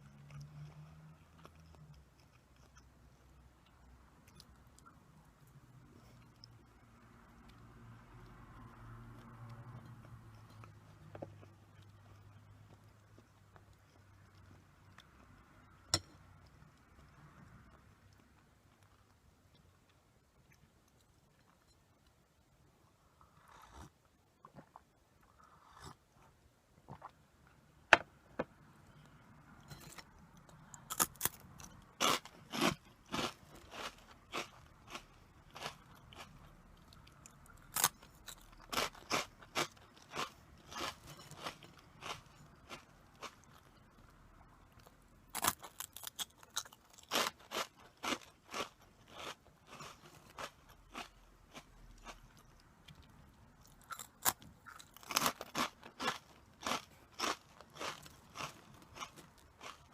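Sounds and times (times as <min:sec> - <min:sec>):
crunching of snacks being chewed: 0:29.7 - 0:59.9.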